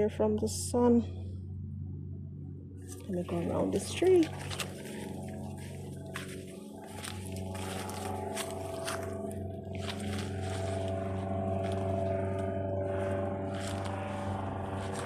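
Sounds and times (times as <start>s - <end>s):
engine droning hum: 0.0s - 15.0s
short crackles or rustles: 9.8s - 11.0s.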